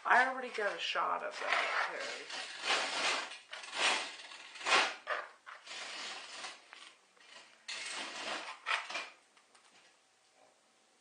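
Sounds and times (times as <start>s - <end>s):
duct tape pulled off roll: 1.6s - 6.6s.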